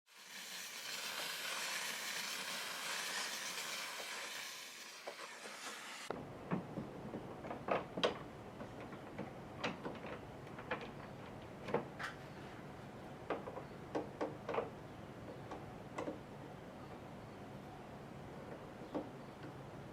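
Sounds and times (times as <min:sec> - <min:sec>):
steam cleaner jet hissing: 0:00.1 - 0:06.1
light clicks and knocks: 0:06.5 - 0:12.2, 0:18.4 - 0:19.7.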